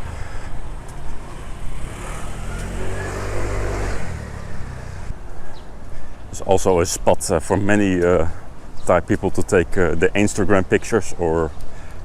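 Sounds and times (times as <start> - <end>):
vehicle engine passing: 0.0 - 5.2
low rumble of traffic: 0.0 - 12.0.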